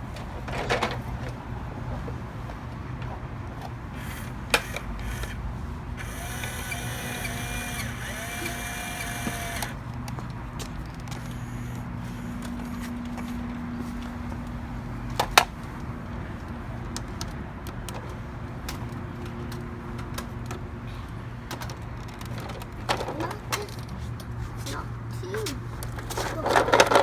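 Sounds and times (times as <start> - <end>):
steady low hum: 3.5 - 15.2
toy trucks knocking among rocks: 4.0 - 5.4, 6.0 - 9.8, 26.1 - 27.0.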